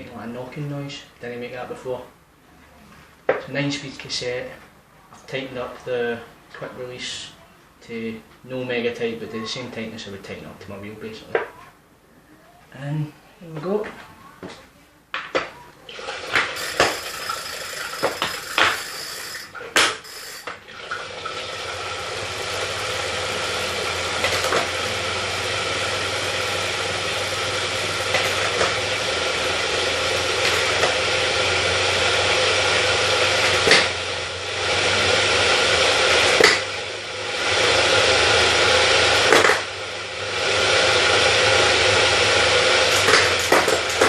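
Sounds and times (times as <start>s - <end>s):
bike trainer whirring: 15.9s - 44.0s.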